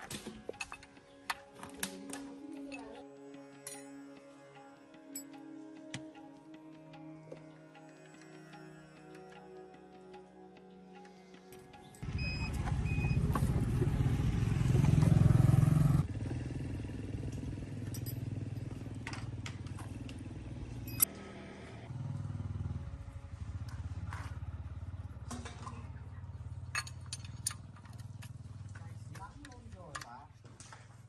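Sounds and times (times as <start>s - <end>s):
small engine running: 12.0s - 29.4s.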